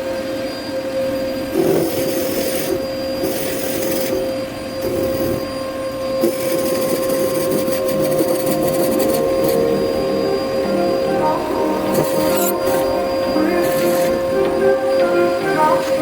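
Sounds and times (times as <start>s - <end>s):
lathe motor whine: 0.0s - 16.0s
turning tool scraping wood: 1.6s - 5.5s, 6.2s - 9.6s.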